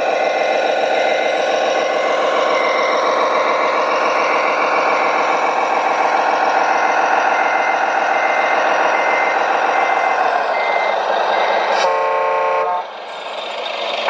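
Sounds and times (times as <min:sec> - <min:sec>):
reversing alarm beeping: 0:00.0 - 0:11.9
short horn blast: 0:11.8 - 0:12.9.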